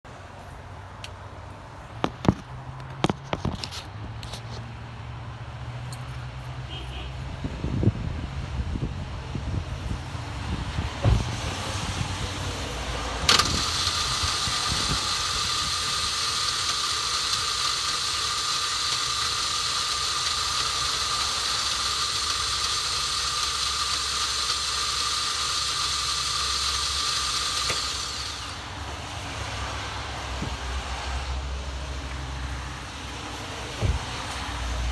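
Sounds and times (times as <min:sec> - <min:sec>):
starter motor whining: 0:13.0 - 0:29.2.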